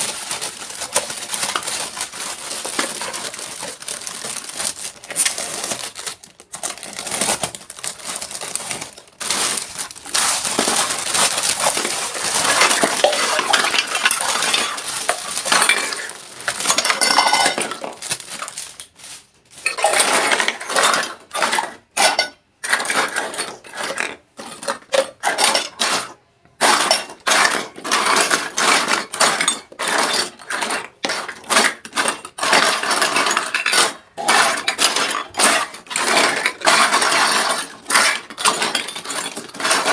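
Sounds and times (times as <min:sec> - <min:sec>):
rustling: 0:00.0 - 0:20.4
toy metal cookware clattering: 0:08.1 - 0:18.0, 0:19.6 - 0:39.9.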